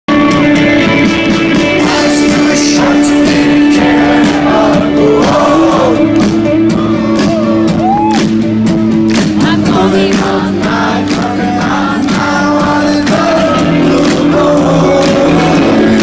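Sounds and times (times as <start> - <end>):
rock band playing live: 0.1 - 16.0
wavering sung vocal: 1.8 - 7.7, 9.4 - 16.0.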